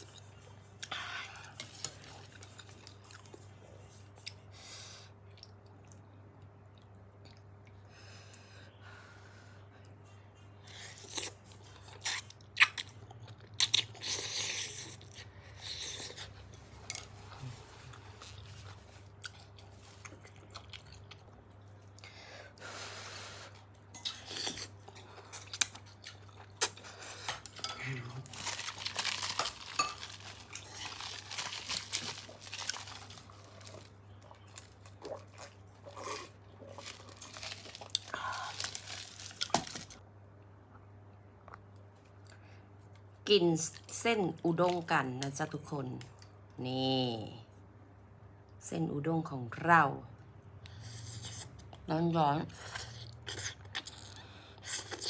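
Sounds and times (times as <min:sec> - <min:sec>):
person chewing noodles: 0:10.7 - 0:22.2, 0:23.4 - 0:40.0
utensils clinking against bowl: 0:27.3 - 0:32.0.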